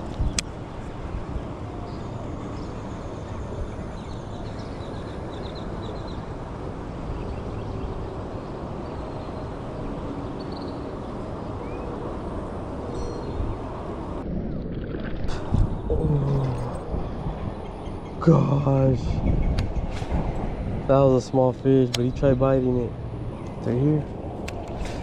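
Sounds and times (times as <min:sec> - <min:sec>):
wind on microphone: 0:13.3 - 0:21.3.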